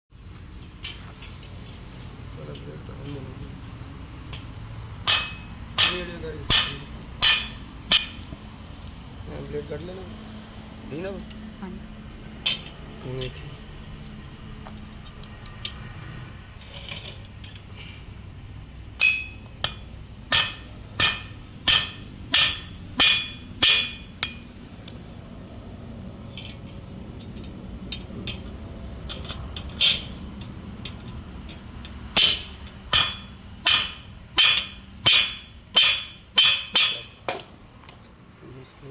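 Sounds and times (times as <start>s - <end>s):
hammer striking metal: 5.0s - 8.4s, 12.4s - 12.8s, 19.0s - 24.5s, 32.1s - 37.5s.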